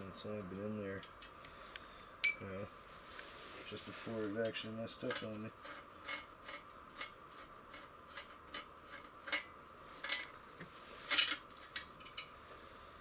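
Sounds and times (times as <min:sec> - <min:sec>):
metal tools clinking on metal: 0:02.2 - 0:02.6.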